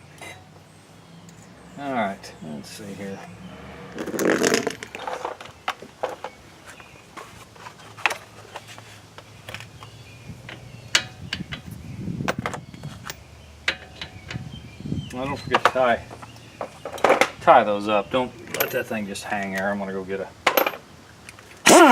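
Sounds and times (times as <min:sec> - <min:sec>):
hand tools clicking and knocking: 0:10.4 - 0:11.7, 0:12.3 - 0:14.5.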